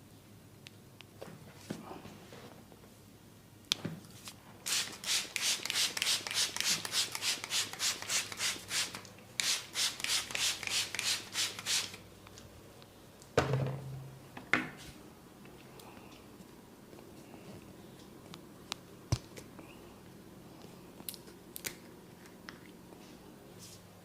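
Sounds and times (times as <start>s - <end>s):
hands rubbing over skin: 4.7s - 12.0s.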